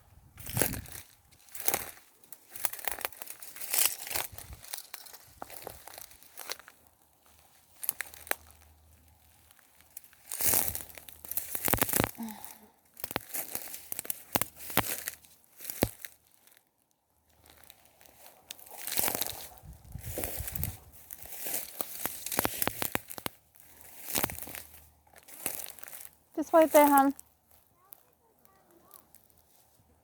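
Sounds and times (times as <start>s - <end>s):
twigs snapping: 0.4s - 6.8s, 7.8s - 8.8s, 9.7s - 16.6s, 17.4s - 26.2s
footsteps crunching dry leaves: 0.4s - 16.6s, 17.2s - 29.9s.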